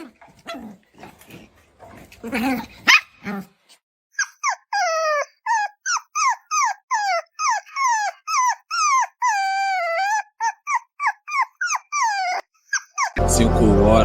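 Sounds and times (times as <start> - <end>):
puppy whining and yipping: 1.9 - 3.5, 4.1 - 13.2.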